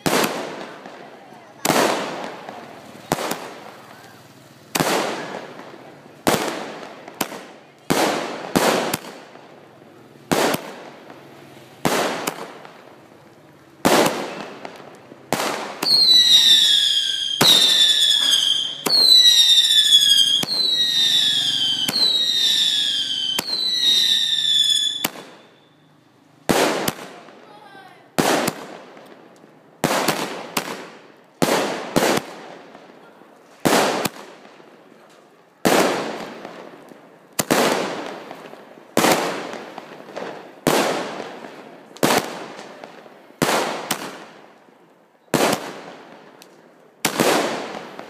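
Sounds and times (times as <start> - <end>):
fireworks bangs: 0.0 - 44.6, 45.2 - 48.0
whistling firework shells: 13.9 - 26.0.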